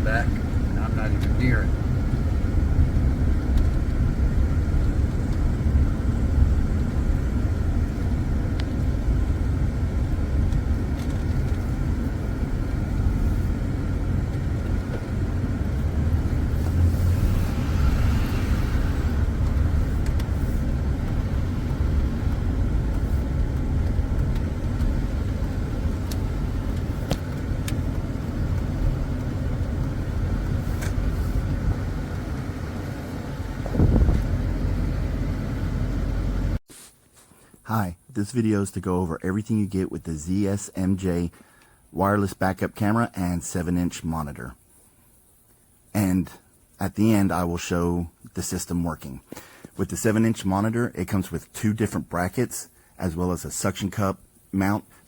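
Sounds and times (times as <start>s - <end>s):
vehicle engine and road rumble: 0.0s - 36.7s.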